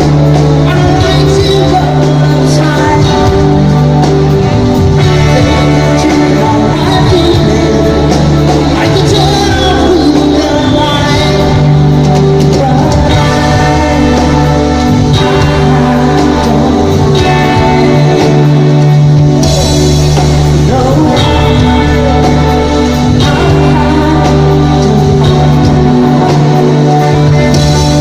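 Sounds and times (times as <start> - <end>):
lead vocal singing: 0.0 - 28.0
live pop-rock band: 0.0 - 28.0.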